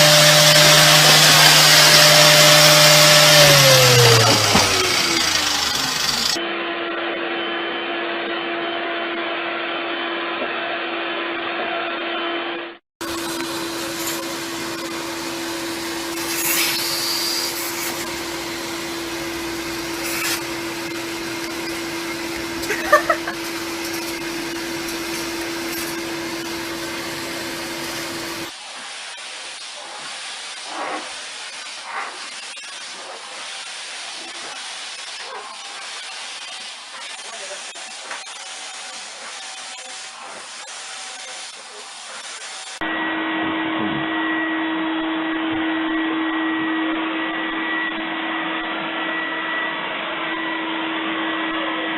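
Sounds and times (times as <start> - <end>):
appliance motor running: 0.0 - 6.4, 13.0 - 28.5.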